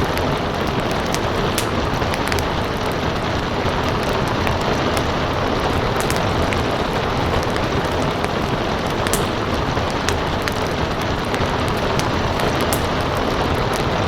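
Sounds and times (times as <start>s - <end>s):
fire crackling and popping: 0.0s - 14.0s
rain hissing: 0.0s - 14.0s.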